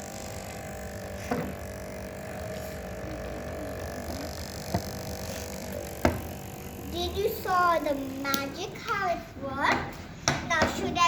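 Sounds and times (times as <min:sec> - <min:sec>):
small motor whine: 0:00.0 - 0:08.7.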